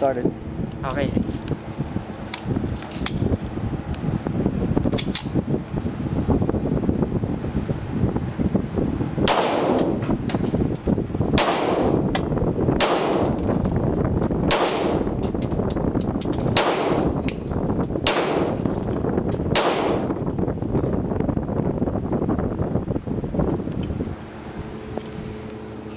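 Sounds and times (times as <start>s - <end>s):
steady background noise: 0.0s - 25.9s
pistol shots with echo: 9.3s - 9.9s, 11.4s - 12.0s, 12.8s - 13.4s, 14.5s - 15.1s, 16.6s - 17.2s, 18.0s - 18.6s, 19.6s - 20.2s.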